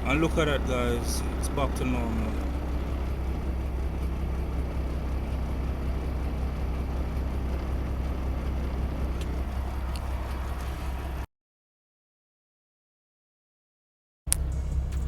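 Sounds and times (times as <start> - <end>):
diesel engine idling: 0.0 - 11.3, 14.3 - 15.0.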